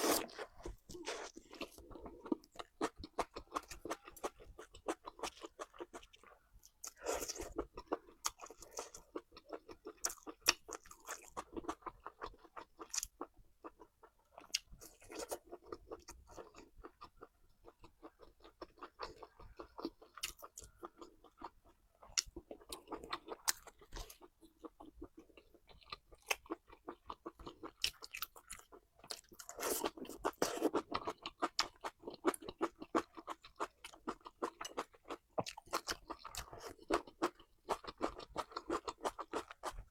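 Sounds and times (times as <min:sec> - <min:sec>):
person chewing and crunching: 0:00.0 - 0:39.9.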